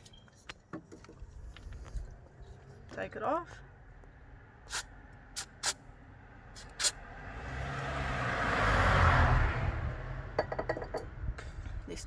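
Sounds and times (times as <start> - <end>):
vehicle passing by: 6.1 - 11.3.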